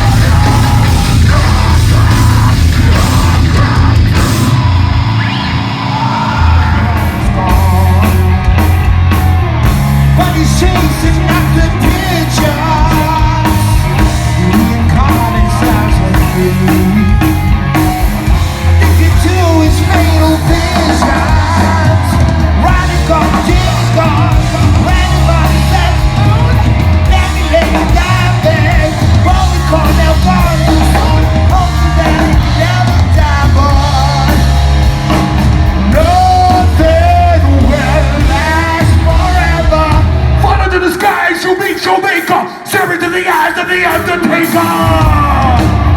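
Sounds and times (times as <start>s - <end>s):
person singing: 0.0s - 8.9s, 10.1s - 17.4s, 18.2s - 45.9s
heavy rock band playing: 0.0s - 45.9s.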